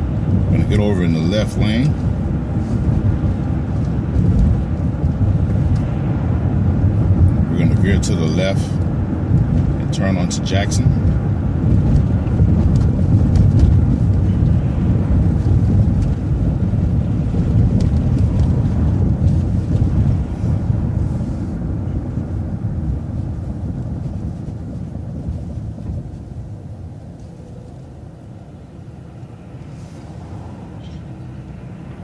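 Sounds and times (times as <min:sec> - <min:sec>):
bus engine and tyres rumbling: 0:00.0 - 0:32.0.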